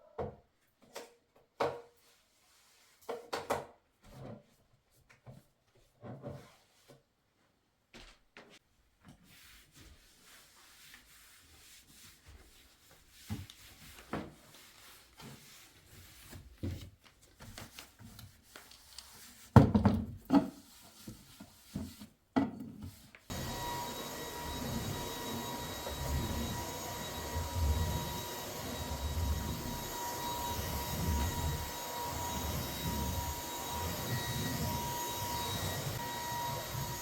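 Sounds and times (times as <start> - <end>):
machine hum with whine: 23.3 - 37.0.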